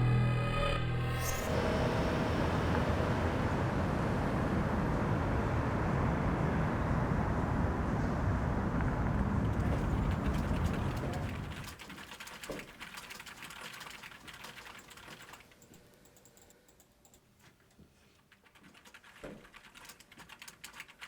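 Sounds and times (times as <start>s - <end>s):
low rumble of vehicles: 1.5s - 11.8s.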